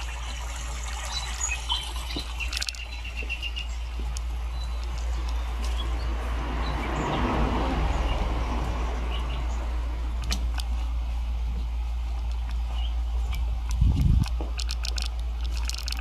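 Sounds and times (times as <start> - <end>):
recorded birds chirping: 0.0 - 16.0
steady low hum: 8.1 - 16.0.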